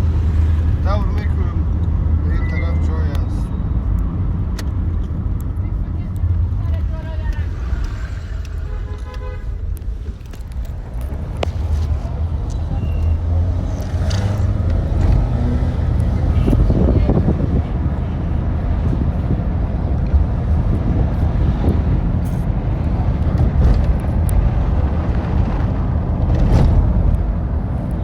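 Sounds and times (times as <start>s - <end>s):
traffic rumble: 0.0s - 28.0s.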